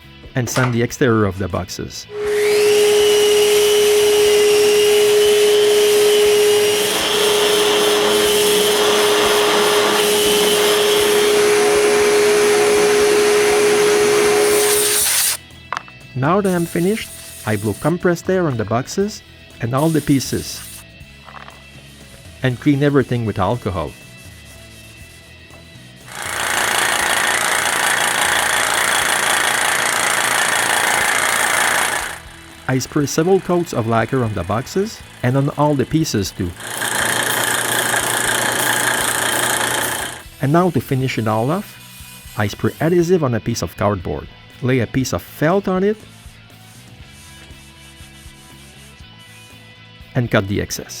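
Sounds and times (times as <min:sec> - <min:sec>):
air spray hissing: 0:02.1 - 0:15.4, 0:16.4 - 0:17.9, 0:19.8 - 0:20.8, 0:36.6 - 0:40.2, 0:41.2 - 0:43.1
electric sander running: 0:02.1 - 0:15.4, 0:16.4 - 0:17.9, 0:19.8 - 0:20.8, 0:26.1 - 0:40.3.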